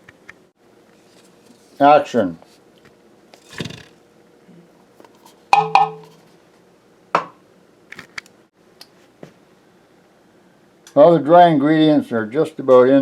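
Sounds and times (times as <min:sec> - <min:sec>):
kitchenware clinking: 0:05.5 - 0:06.2.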